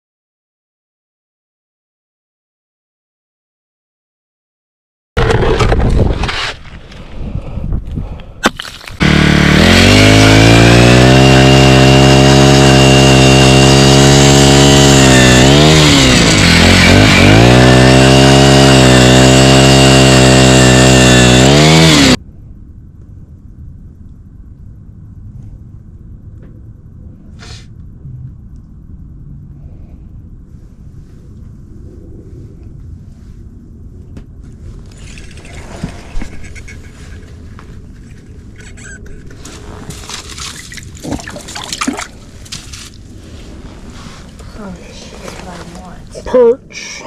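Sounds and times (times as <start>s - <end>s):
small gas engine running hard: 9.0s - 22.2s.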